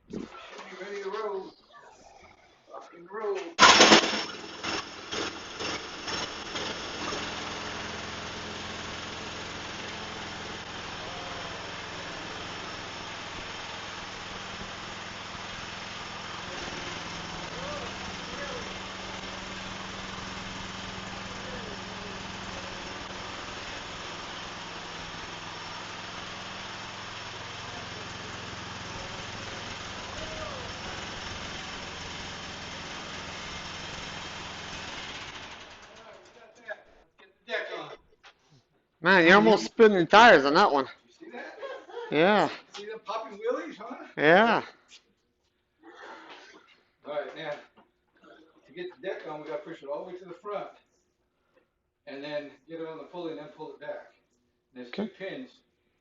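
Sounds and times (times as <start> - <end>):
lawn tractor engine running: 3.6 - 36.2.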